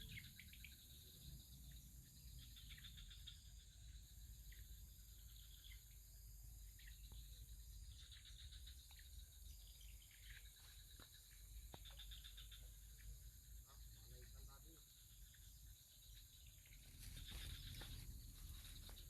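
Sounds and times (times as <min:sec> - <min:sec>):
high-pitched insect drone: 0:00.0 - 0:19.0.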